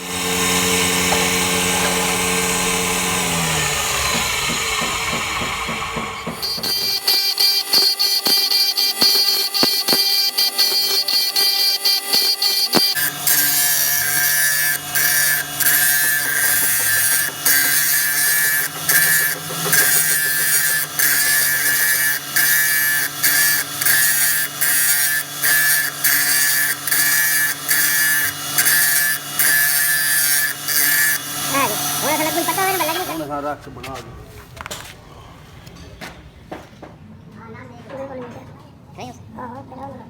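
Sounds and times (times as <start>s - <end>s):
low motor hum: 0.0s - 7.0s
metal grinding rasp: 0.0s - 33.4s.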